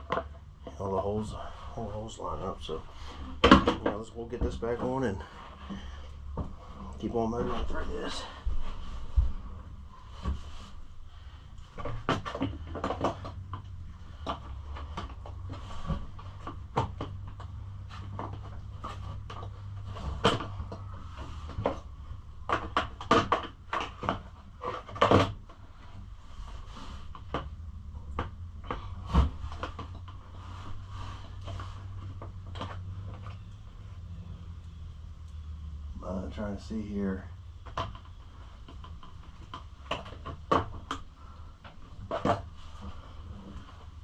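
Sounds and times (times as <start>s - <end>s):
plastic panels knocking and clicking: 3.3s - 4.8s, 11.8s - 20.9s, 22.4s - 25.5s, 37.6s - 42.5s.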